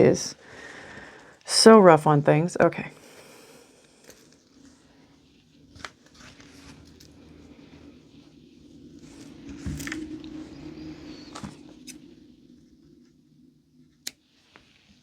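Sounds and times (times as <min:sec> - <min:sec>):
steady low hum: 0:00.0 - 0:15.0
crafting materials handling: 0:05.7 - 0:07.4, 0:08.9 - 0:12.0.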